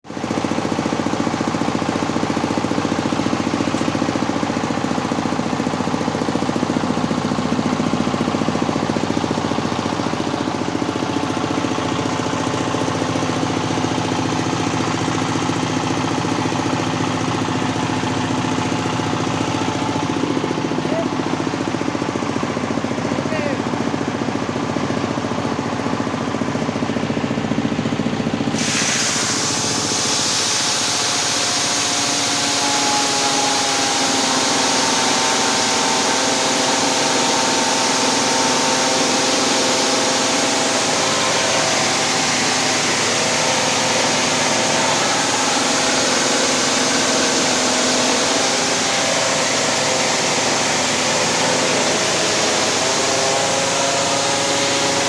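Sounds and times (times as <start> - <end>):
machine engine humming: 0.1 - 55.0
loud rushing rattle: 28.5 - 55.0.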